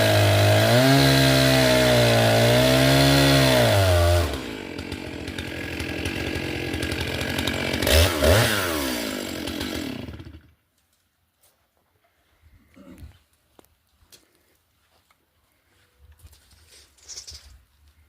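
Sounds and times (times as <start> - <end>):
chainsaw cutting wood: 0.0 - 10.6.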